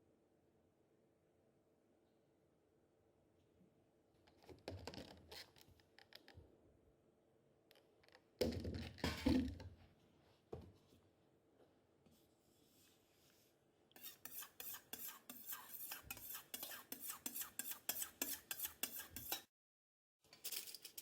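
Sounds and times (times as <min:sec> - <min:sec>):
objects being handled: 0:20.2 - 0:21.0.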